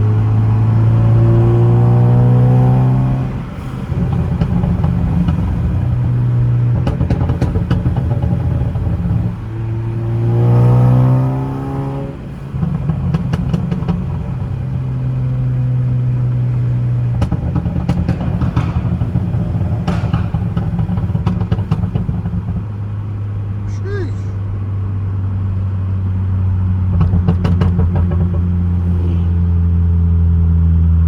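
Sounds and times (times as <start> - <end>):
car engine revving: 0.0 - 23.7
exhaust crackles and pops: 3.9 - 9.5, 12.6 - 23.1, 26.8 - 28.8.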